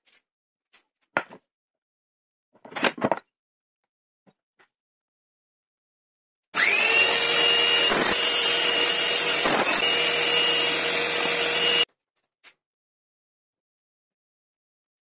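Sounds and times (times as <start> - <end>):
power tool motor whine: 6.6 - 11.9.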